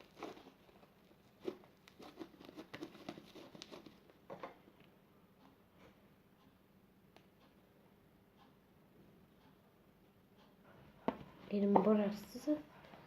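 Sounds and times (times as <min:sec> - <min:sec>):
faint handling clicks and taps: 0:10.4 - 0:13.0.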